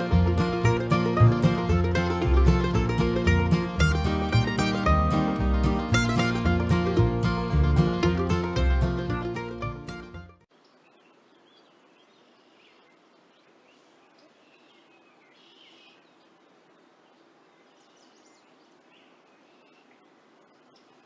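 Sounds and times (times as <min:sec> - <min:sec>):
small birds chirping: 0:10.6 - 0:21.0.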